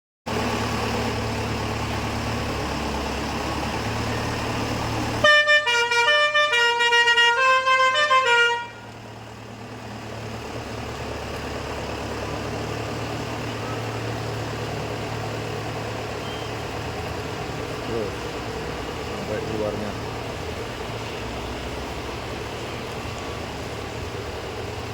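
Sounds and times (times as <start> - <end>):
bus engine running: 0.3 - 24.9
multi-tone bus horn tune: 5.2 - 9.0.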